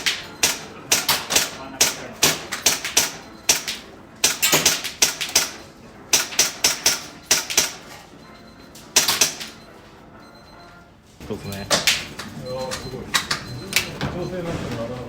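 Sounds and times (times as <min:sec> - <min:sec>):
airsoft pistol shots: 0:00.0 - 0:07.9, 0:09.0 - 0:09.5.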